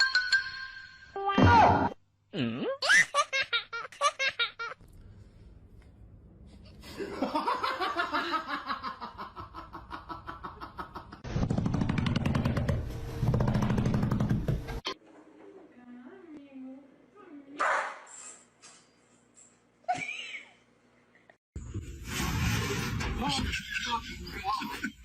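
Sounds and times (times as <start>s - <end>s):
person laughing: 19.9s - 20.6s, 23.2s - 25.0s.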